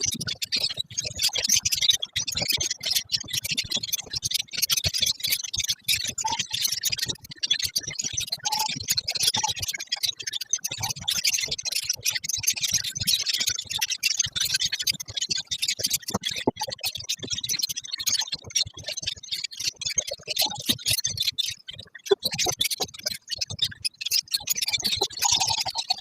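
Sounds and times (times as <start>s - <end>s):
birds chattering and chirping: 22.3s - 26.0s.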